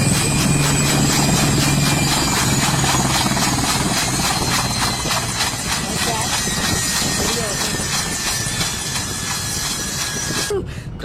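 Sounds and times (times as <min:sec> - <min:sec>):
helicopter engine and rotor hum: 0:00.0 - 0:10.6.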